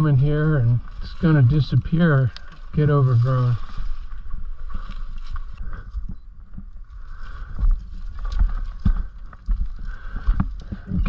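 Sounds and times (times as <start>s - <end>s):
rustling brush: 0.0s - 6.1s.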